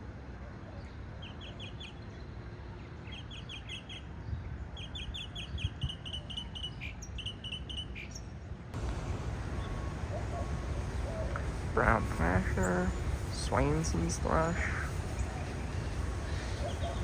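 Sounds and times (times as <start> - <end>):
low background rumble: 8.7 - 17.0
cardinal singing whistled notes: 9.6 - 17.0.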